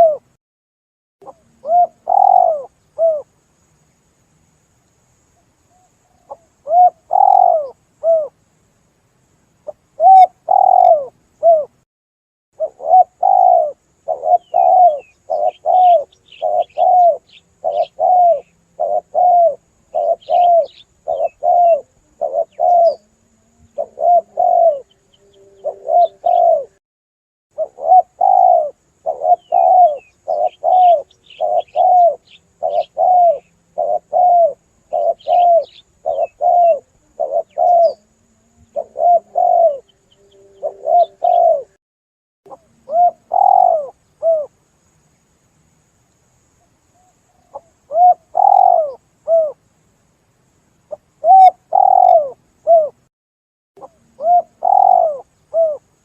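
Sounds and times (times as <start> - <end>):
dove cooing: 0.0 - 0.3, 1.2 - 3.3, 6.1 - 8.4, 9.6 - 11.8, 12.6 - 26.8, 27.6 - 41.8, 42.5 - 44.5, 47.0 - 49.6, 50.9 - 53.0, 53.8 - 55.9
small birds chirping: 1.2 - 3.8, 4.7 - 8.8, 9.6 - 11.7, 12.6 - 26.8, 27.6 - 41.8, 42.5 - 45.3, 46.0 - 50.0, 50.8 - 53.0, 53.8 - 55.8.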